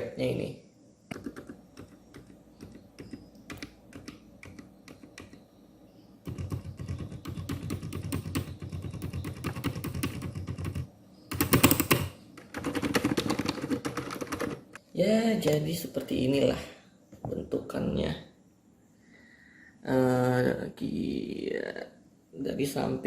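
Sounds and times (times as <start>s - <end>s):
mechanical keyboard typing: 1.1s - 5.4s, 6.3s - 14.8s.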